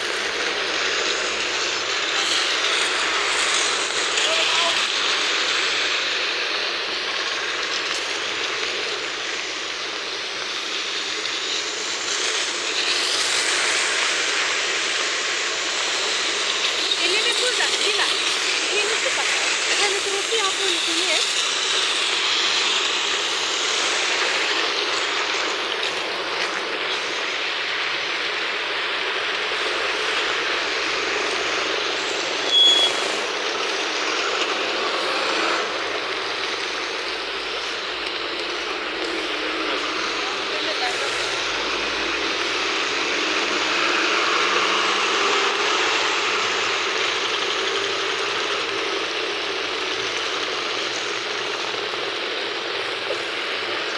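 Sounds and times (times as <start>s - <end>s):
heavy rain falling: 0.0s - 53.9s
short high beep: 32.5s - 33.0s.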